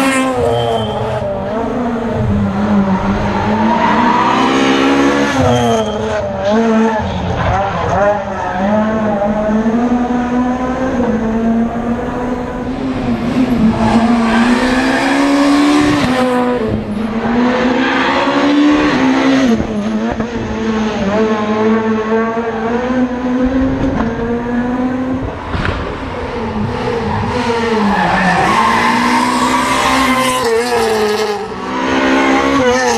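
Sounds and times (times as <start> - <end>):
rally car engine accelerating: 0.0 - 32.9.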